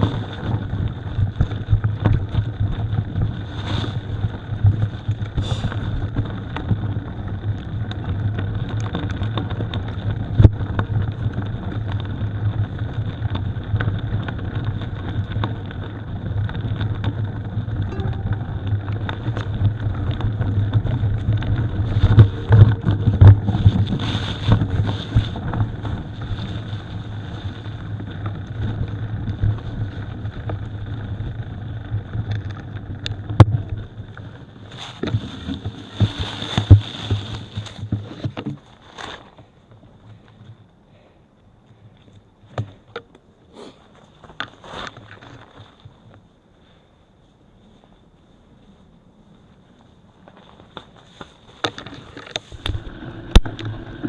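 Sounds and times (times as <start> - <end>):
bike knocks and rattles: 0.0 - 39.5, 42.4 - 43.2
wind rumble on microphone: 0.0 - 43.4, 44.1 - 54.0.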